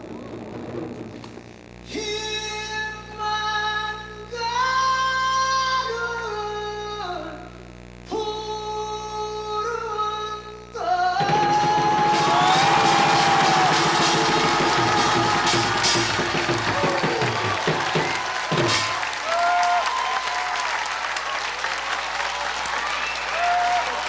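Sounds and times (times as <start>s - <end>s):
high wordless singing voice: 1.9s - 12.6s.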